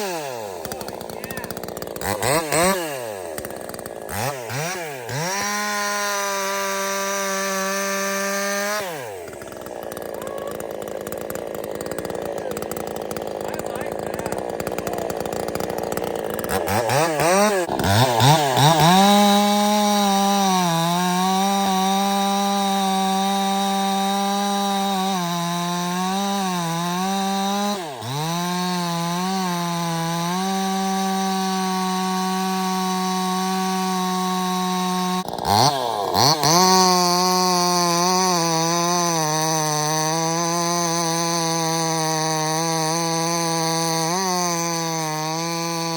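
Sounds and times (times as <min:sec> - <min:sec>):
chainsaw revving: 0:00.0 - 0:45.9.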